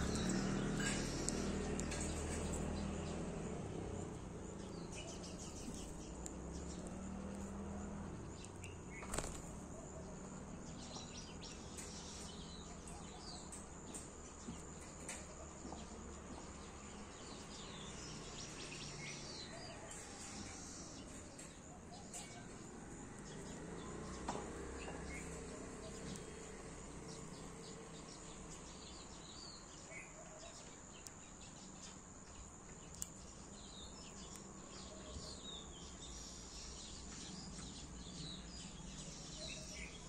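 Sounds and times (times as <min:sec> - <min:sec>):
outdoor background hiss: 0:00.0 - 0:40.0
small birds chirping: 0:00.0 - 0:40.0.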